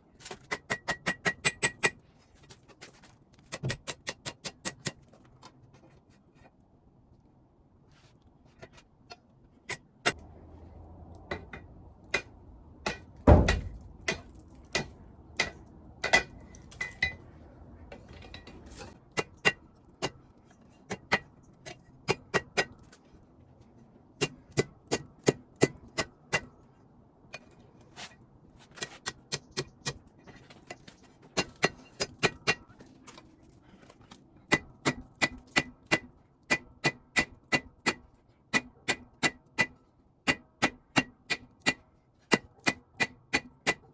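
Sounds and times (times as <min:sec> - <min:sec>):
hammer striking steel on anvil: 0:11.3 - 0:17.2, 0:34.5 - 0:43.8
heavy low thump: 0:13.3 - 0:13.9.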